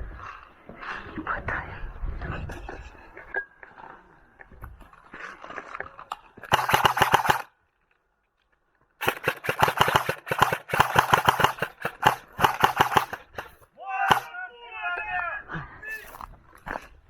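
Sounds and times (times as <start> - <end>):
airsoft guns firing rapidly: 6.5 - 7.5, 9.0 - 14.3.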